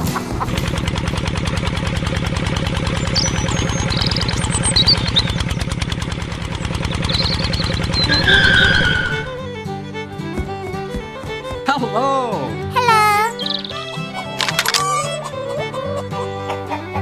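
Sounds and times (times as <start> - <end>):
small engine puttering: 0.0 - 11.7, 13.3 - 15.8
high chirps: 2.9 - 5.5, 7.0 - 9.4, 13.2 - 15.2.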